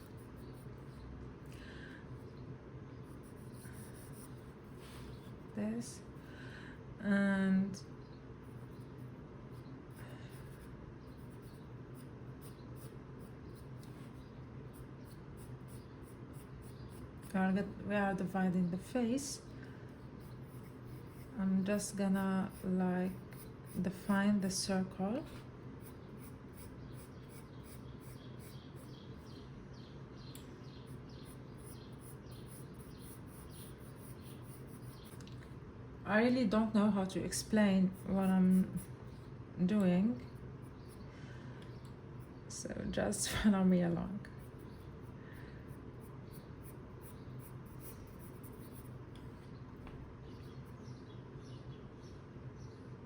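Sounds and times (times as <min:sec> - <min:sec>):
low steady hum: 0:00.0 - 0:53.0
pencil scratching on paper: 0:03.0 - 0:05.4, 0:08.4 - 0:19.0, 0:20.0 - 0:29.4, 0:30.8 - 0:35.2, 0:36.6 - 0:39.2, 0:44.3 - 0:49.0.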